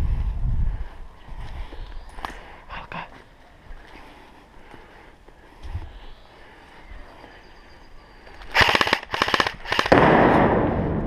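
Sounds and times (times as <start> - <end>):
airsoft guns firing: 8.5 - 11.0.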